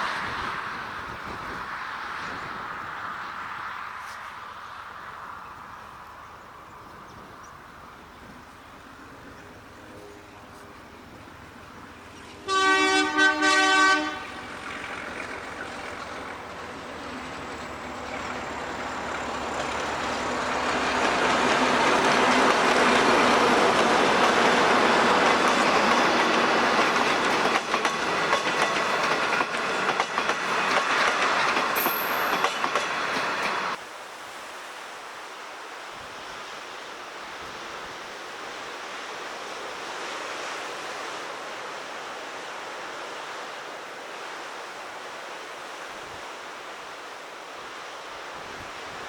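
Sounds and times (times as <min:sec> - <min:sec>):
locomotive horn chord: 0:12.4 - 0:14.6
locomotive engine: 0:13.8 - 0:33.8
train wheels clattering on rails: 0:14.6 - 0:33.8.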